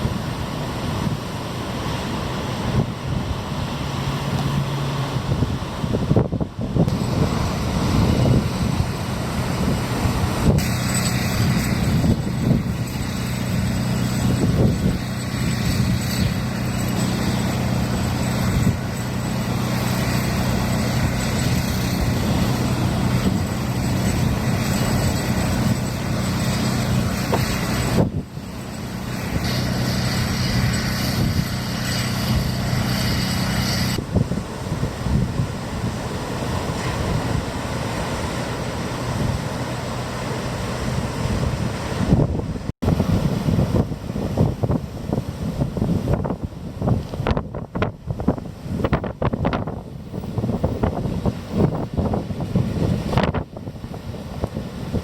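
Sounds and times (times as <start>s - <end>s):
steady low drone: 0.0s - 41.8s
surf: 0.0s - 55.0s
wind rushing over microphone: 0.0s - 55.0s.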